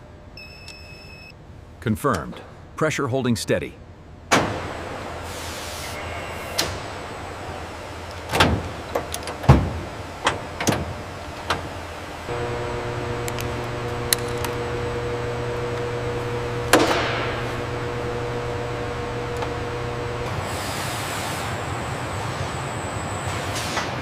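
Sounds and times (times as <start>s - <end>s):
steady mechanical hum: 0.0s - 24.0s
machine humming held tones: 12.1s - 23.7s.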